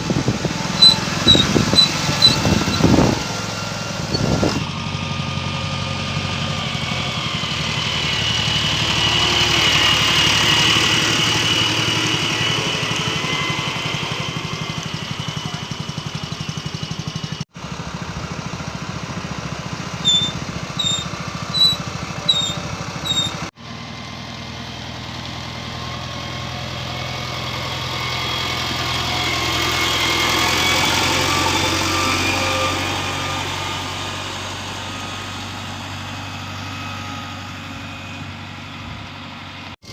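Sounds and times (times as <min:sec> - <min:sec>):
diesel engine with high whine: 0:00.0 - 0:39.9
short high chirps: 0:20.0 - 0:23.4.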